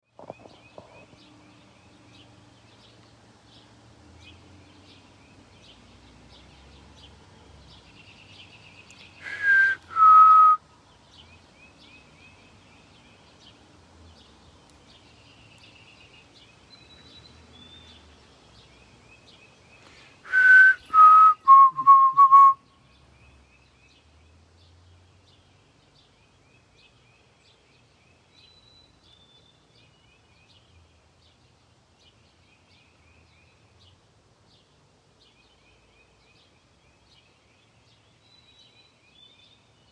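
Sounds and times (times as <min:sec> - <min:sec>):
faint small-bird chirps: 0:00.1 - 0:07.1, 0:14.6 - 0:20.2, 0:22.6 - 0:31.4, 0:32.1 - 0:39.9
bird whistling loud notes: 0:09.2 - 0:10.6, 0:20.3 - 0:22.6.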